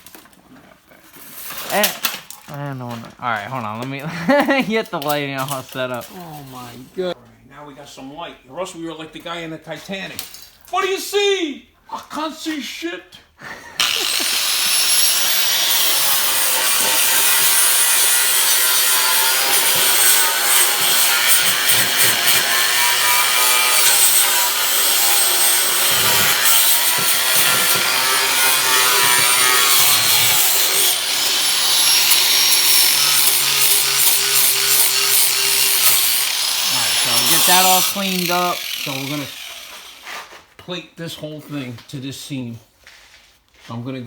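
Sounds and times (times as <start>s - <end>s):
angle grinder grinding metal: 13.8s - 40.3s.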